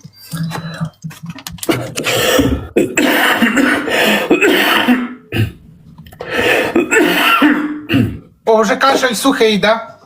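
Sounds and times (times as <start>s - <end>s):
man coughing: 2.7s - 5.6s, 6.6s - 8.3s.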